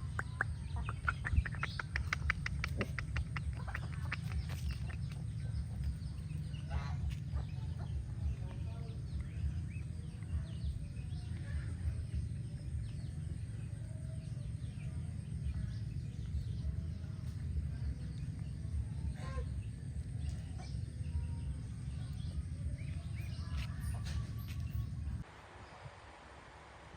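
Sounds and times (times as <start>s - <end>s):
chickens clucking: 0.0s - 10.3s
birds chirping: 0.0s - 25.9s
steady low rumble: 0.0s - 26.9s.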